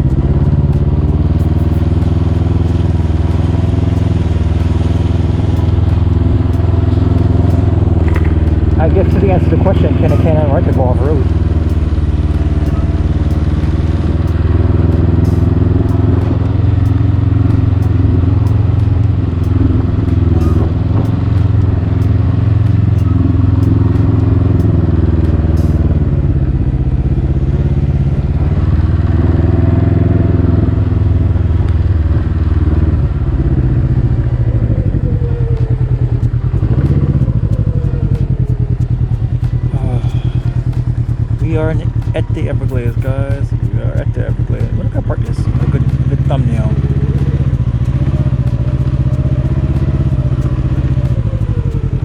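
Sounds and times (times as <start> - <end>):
three-wheeler engine running: 0.0 - 52.0.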